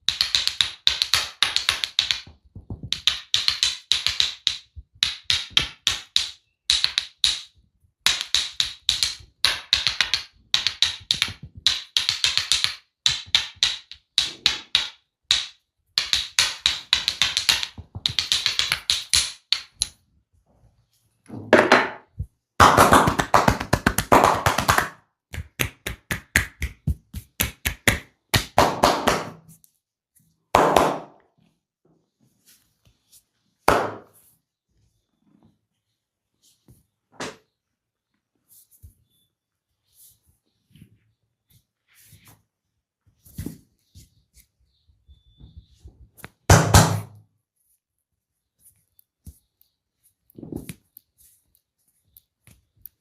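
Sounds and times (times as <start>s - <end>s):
massage strokes tapping on body: 0.1s - 7.5s, 8.1s - 15.0s.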